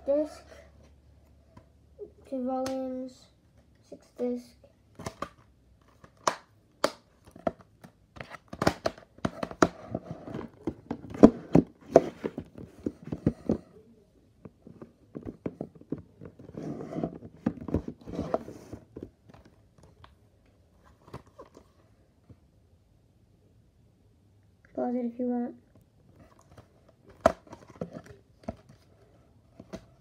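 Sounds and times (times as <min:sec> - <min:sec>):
plastic cases clicking and knocking: 0:05.0 - 0:13.6, 0:14.4 - 0:20.2.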